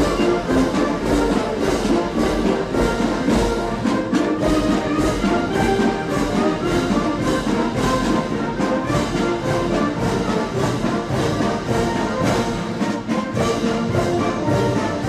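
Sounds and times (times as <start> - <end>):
military band playing a march: 0.0 - 15.0.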